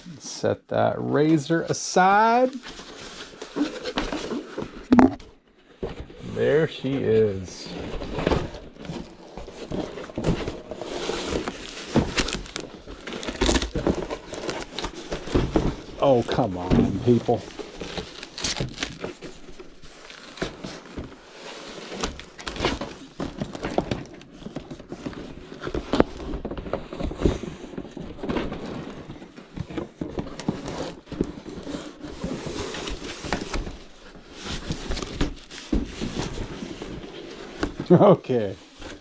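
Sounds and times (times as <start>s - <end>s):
packaging crinkling and tearing: 7.2s - 38.0s.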